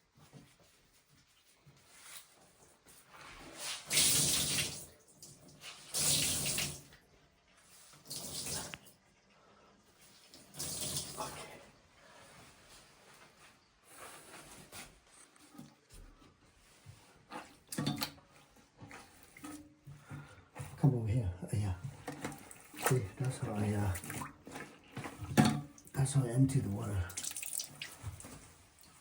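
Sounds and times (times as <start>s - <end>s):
water splashing from wrung towel: 3.8s - 5.0s, 22.4s - 24.7s, 27.0s - 29.0s
water trickling: 21.5s - 29.0s.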